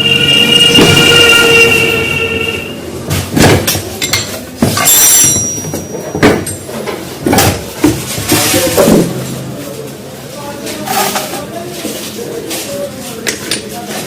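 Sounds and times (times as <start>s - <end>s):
high-pitched metallic squeal: 0.0s - 3.0s
ringing metal clink: 4.8s - 5.9s.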